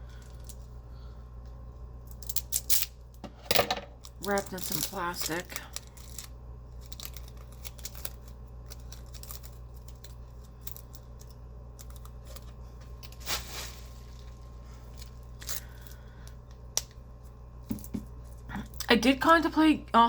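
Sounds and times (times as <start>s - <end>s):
plastic wrap crinkling: 4.3s - 15.8s
plastic wrap rustling: 12.0s - 15.8s.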